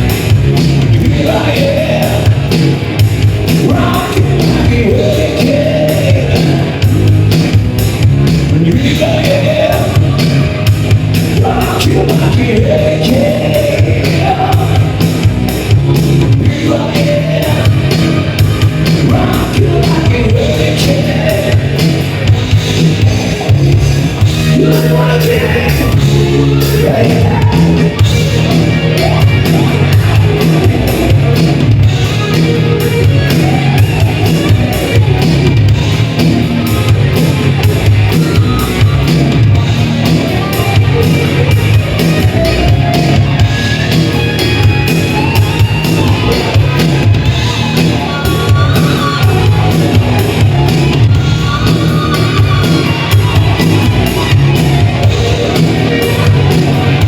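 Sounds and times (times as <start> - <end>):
bass guitar: 0.0 - 57.0
drums: 0.0 - 57.0
electric guitar: 0.0 - 57.0
singer shouting vocals: 0.9 - 2.6, 3.5 - 6.8, 8.5 - 10.6, 11.2 - 15.2, 15.9 - 22.0, 24.2 - 31.1.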